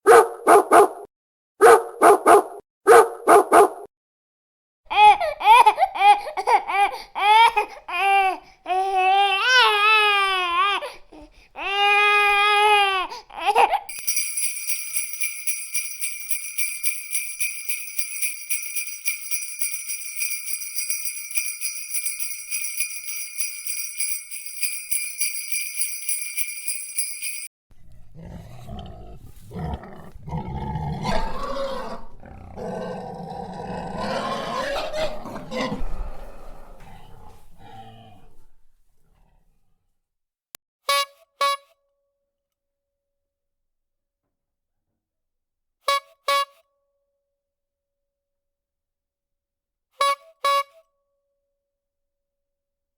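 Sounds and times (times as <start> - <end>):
dog barking: 0.0 - 3.9
bell jingling rapidly: 13.9 - 27.5.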